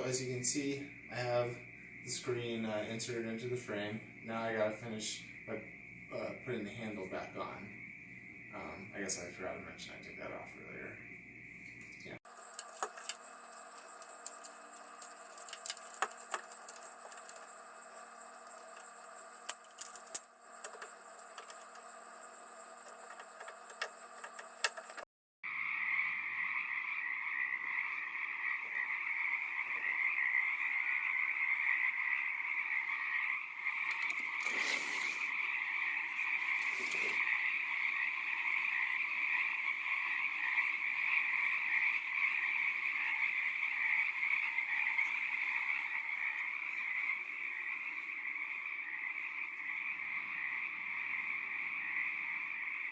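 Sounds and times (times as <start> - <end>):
frogs calling: 0.0 - 52.9
insects trilling: 0.0 - 52.9
sharp clicks: 12.3 - 25.1.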